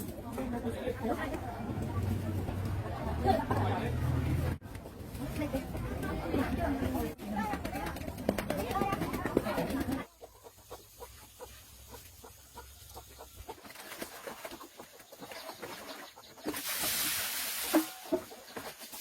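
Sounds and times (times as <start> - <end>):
chickens clucking: 7.4 - 16.9, 17.5 - 19.0.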